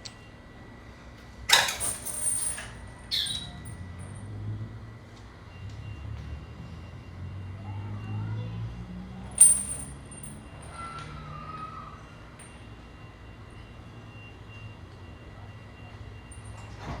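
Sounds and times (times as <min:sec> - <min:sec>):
steady low hum: 0:09.2 - 0:10.7.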